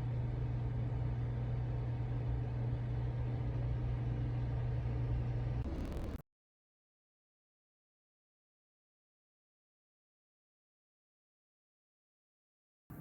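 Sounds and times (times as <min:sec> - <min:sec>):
low machine hum: 0:00.0 - 0:06.2.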